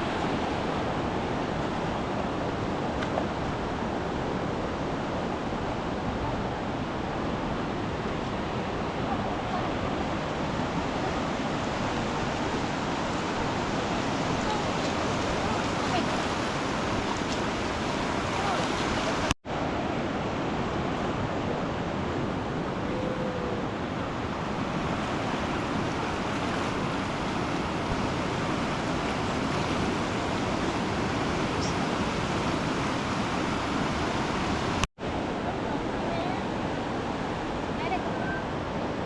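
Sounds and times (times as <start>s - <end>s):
river rushing in flood: 0.0s - 39.0s.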